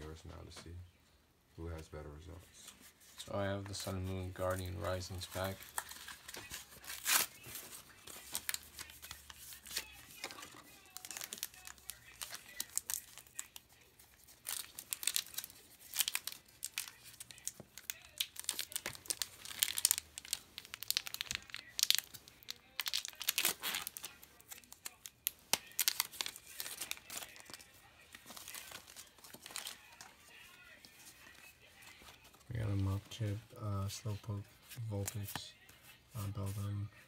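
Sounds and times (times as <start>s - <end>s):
foil wrapper tearing and crinkling: 4.4s - 30.5s.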